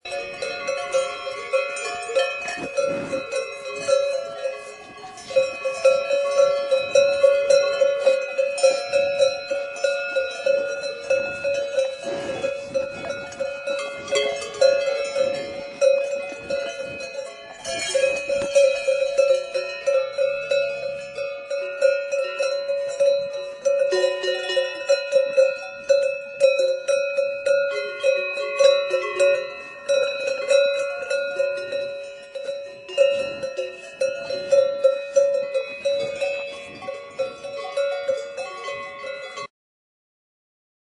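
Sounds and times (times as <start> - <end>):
cowbells clanking: 0.0 - 39.5
ringing bell tone: 0.0 - 39.5.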